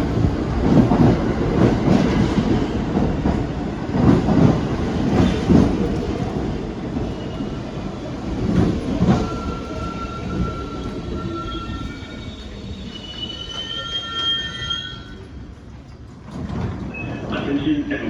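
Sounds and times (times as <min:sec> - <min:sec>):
subway train rumbling: 0:00.0 - 0:18.0
train clanks: 0:00.0 - 0:18.0
train wheels squealing: 0:09.0 - 0:15.4.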